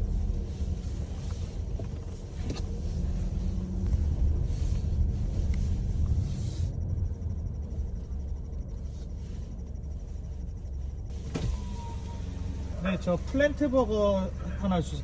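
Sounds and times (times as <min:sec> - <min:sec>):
car engine rumble: 0:00.0 - 0:15.0
road noise: 0:00.0 - 0:15.0.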